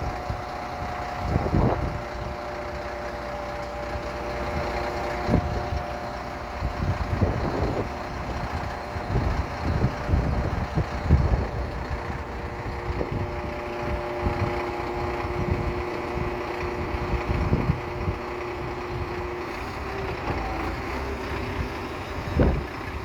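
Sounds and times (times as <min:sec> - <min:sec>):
wind on microphone: 0:00.0 - 0:02.5, 0:06.6 - 0:20.4, 0:21.3 - 0:23.0
diesel truck engine running: 0:00.0 - 0:23.0.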